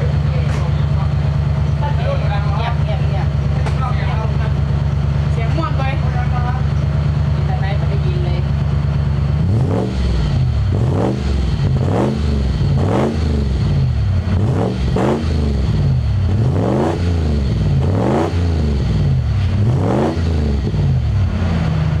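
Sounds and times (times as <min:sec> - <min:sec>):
engine idling and revving: 0:00.0 - 0:22.0.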